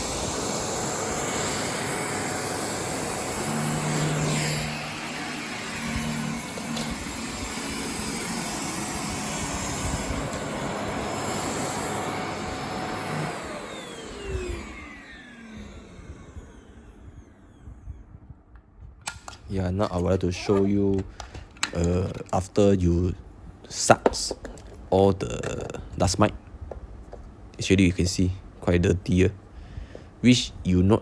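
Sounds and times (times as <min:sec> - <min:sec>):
vacuum cleaner whining: 0:00.0 - 0:22.4.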